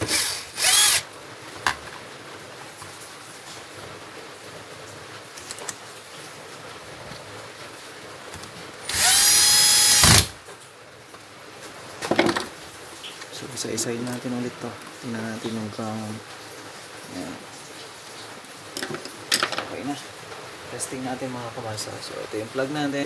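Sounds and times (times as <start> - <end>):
electric drill motor whirring: 0.0 - 1.0, 8.9 - 10.4.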